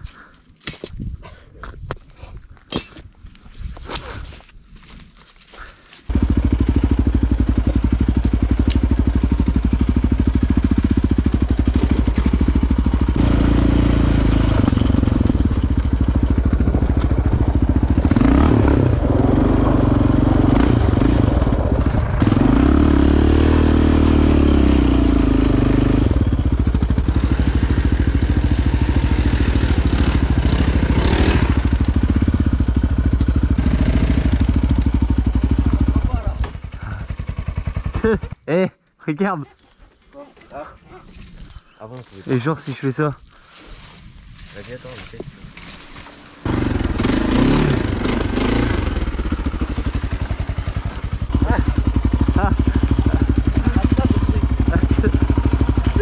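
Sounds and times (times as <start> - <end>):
quad engine running: 6.1 - 38.4, 45.0 - 56.0.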